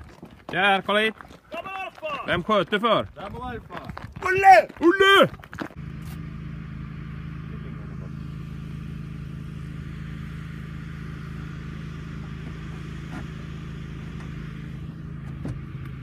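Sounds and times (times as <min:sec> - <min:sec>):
engine idling: 0:04.3 - 0:16.0.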